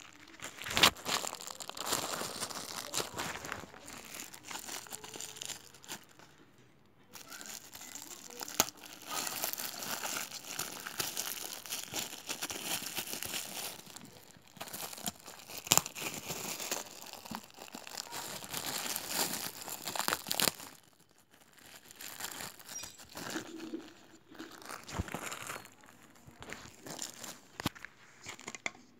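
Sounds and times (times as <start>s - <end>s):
plastic packaging crinkling: 0.0s - 6.4s, 7.1s - 28.6s.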